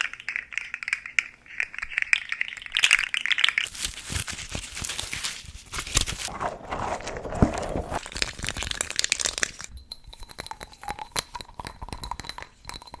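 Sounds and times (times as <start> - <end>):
crinkling and crunching: 3.6 - 9.7.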